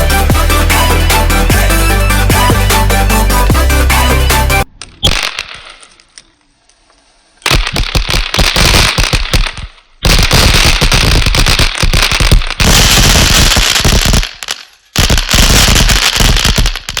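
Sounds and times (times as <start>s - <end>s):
firecrackers snapping: 4.8s - 6.8s, 7.4s - 17.0s.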